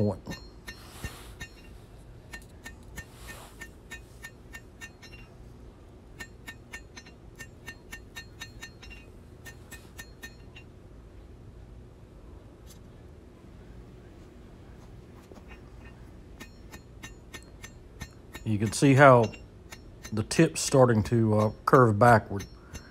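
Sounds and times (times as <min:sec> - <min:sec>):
hammer ringing on anvil: 0:00.0 - 0:05.4, 0:06.1 - 0:10.7, 0:15.4 - 0:22.9.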